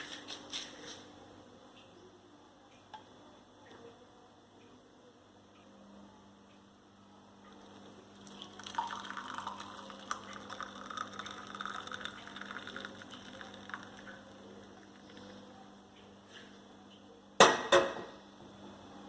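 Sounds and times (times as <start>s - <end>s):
liquid pouring into a cup: 7.5s - 15.5s.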